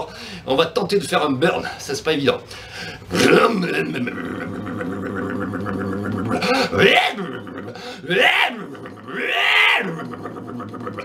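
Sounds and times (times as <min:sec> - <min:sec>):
man imitating engine rumble: 0:03.1 - 0:11.0.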